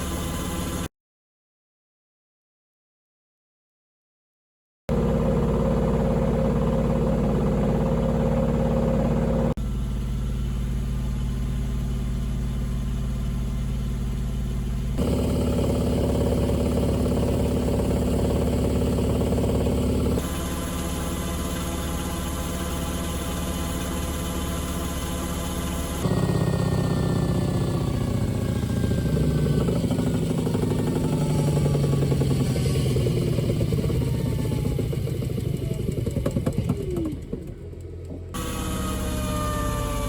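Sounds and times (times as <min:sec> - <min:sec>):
washing machine motor hum: 0:15.0 - 0:40.0.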